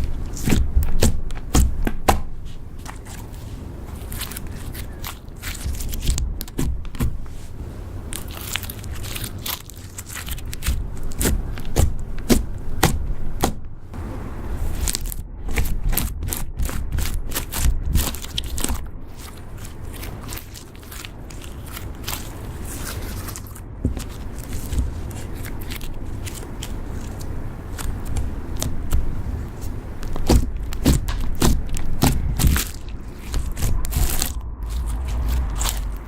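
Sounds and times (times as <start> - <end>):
slime squished by hand: 0.0 - 3.4, 14.7 - 36.0.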